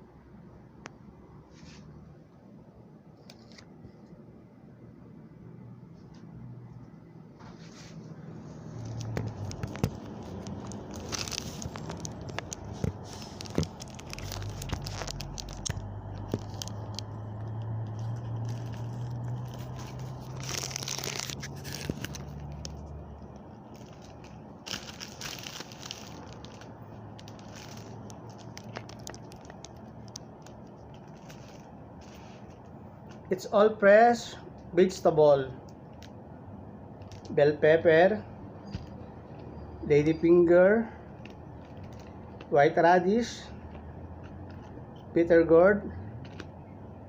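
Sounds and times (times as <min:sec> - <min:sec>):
steady low hum: 0:00.0 - 0:47.0
plastic packaging crinkling: 0:08.6 - 0:32.7, 0:41.0 - 0:42.6.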